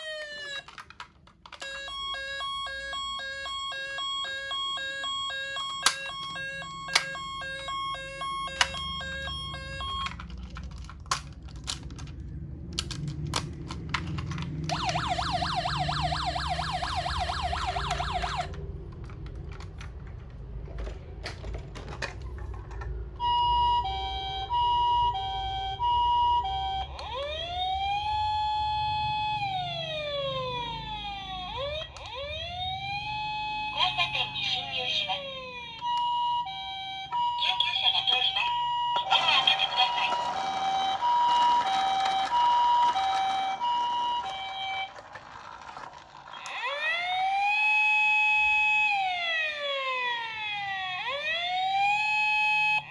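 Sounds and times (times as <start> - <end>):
toy electronic sirens: 0.0 - 12.1, 12.8 - 19.9, 21.4 - 52.9
plastic clicks: 0.2 - 1.8, 5.6 - 7.3, 9.9 - 15.2, 17.5 - 23.1.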